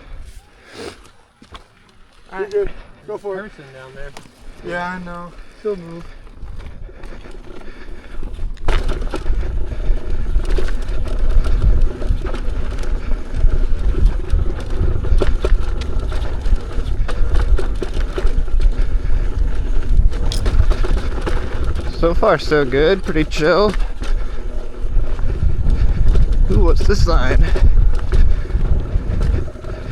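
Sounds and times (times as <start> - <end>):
tyre rumbling over rock and gravel: 6.2 - 29.9.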